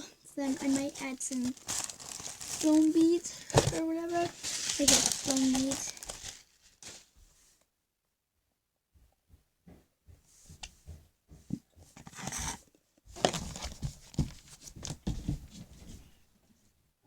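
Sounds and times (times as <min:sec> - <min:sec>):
plastic packaging rustling: 0:00.4 - 0:07.2, 0:13.2 - 0:15.4.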